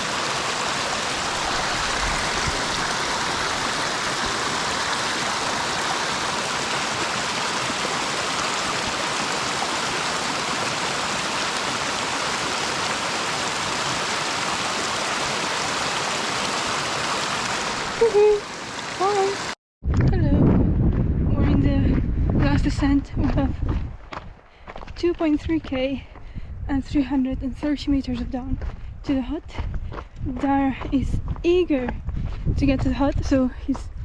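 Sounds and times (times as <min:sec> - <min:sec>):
running water: 0:00.0 - 0:19.6.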